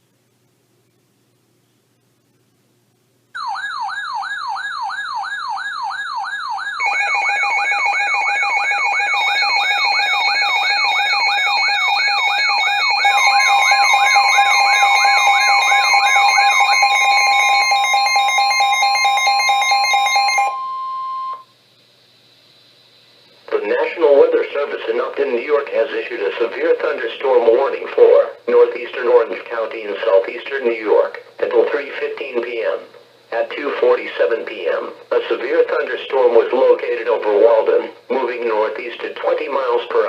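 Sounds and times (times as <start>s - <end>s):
steady warning alert tone: 3.4s - 21.4s
sweeping siren whoop: 3.4s - 21.4s
steady alarm tones: 3.4s - 21.5s.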